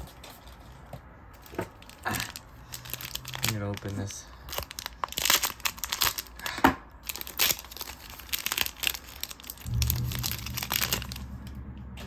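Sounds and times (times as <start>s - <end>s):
plastic packaging crinkling and tearing: 1.4s - 11.3s
steady low hum: 9.6s - 12.0s.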